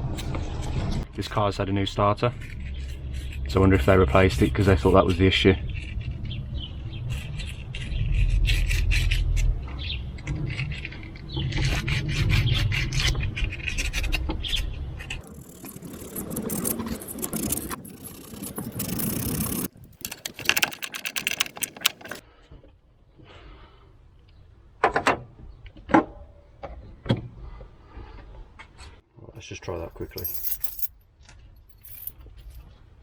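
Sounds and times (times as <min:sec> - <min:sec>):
abrasive paper scraping metal: 0:15.2 - 0:20.1
sharp metallic clicks: 0:15.2 - 0:22.2.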